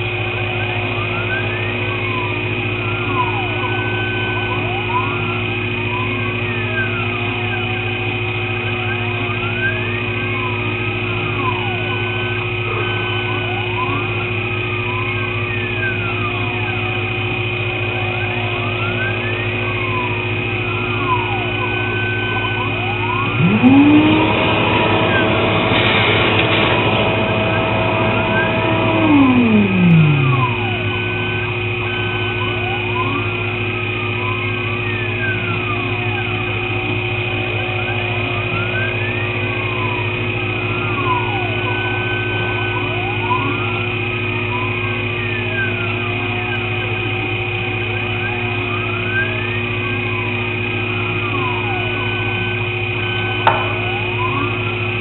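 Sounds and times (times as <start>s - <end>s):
loud whine with rush of noise: 0.0s - 55.0s
steady motor hum: 0.0s - 55.0s
whining stepper motors: 0.0s - 55.0s.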